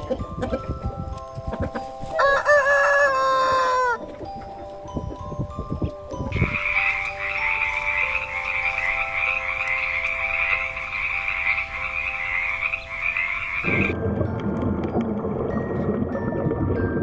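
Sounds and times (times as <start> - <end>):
soft sustained background notes: 0.0 - 16.1
frogs trilling: 5.8 - 14.0.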